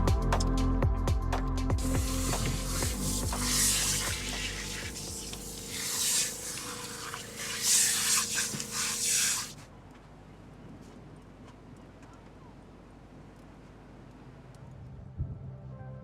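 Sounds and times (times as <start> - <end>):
faint background music: 0.0 - 7.8, 14.6 - 16.0.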